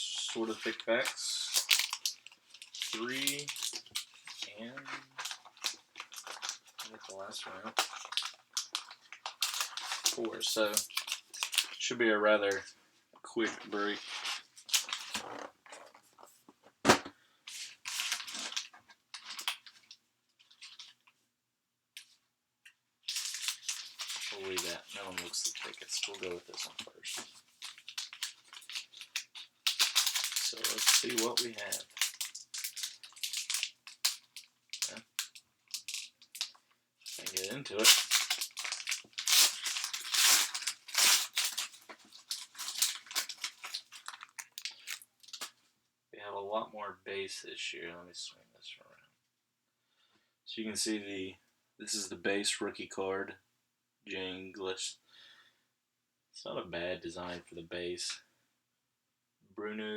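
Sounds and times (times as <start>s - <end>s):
wrappers crinkling and rustling: 0.0s - 11.9s, 13.4s - 16.4s, 17.5s - 21.1s, 23.0s - 45.6s
pack knocking on table: 16.8s - 17.1s.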